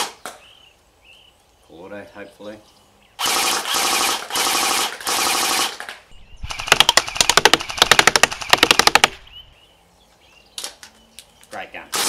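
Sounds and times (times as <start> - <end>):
airsoft rifle firing bursts: 3.2 - 5.8, 6.5 - 9.3.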